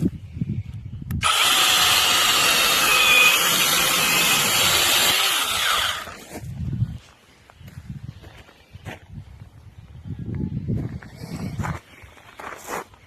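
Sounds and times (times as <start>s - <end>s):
mini chainsaw running: 1.2s - 6.3s.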